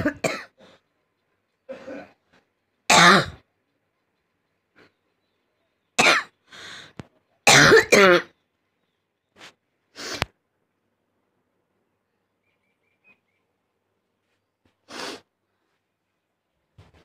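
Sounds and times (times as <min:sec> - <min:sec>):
person coughing: 0:00.0 - 0:00.6, 0:01.7 - 0:02.2, 0:06.0 - 0:06.3, 0:07.5 - 0:08.3.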